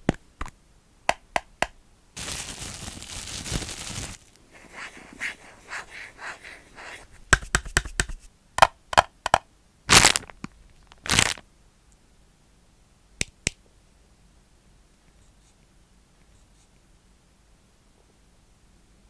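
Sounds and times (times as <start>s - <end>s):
soft plastic rustling: 2.2s - 5.9s, 11.0s - 11.4s.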